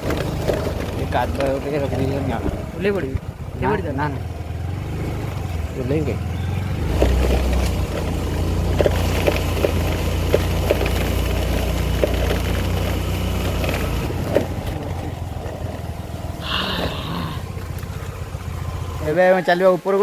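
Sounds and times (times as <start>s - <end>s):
knocks and clatters: 0.0s - 3.3s, 6.8s - 16.0s
motorcycle engine running: 0.0s - 20.0s.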